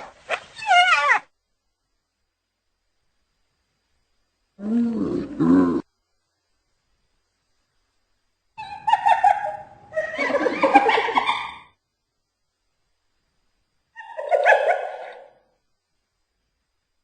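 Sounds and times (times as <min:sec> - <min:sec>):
hyena giggling calls: 0:08.6 - 0:11.7, 0:14.0 - 0:15.4.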